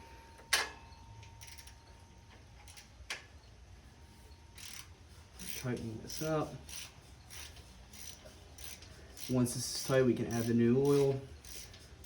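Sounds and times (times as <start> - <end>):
wrench clicking and scraping: 1.4 - 1.8, 2.6 - 3.2, 4.6 - 12.0.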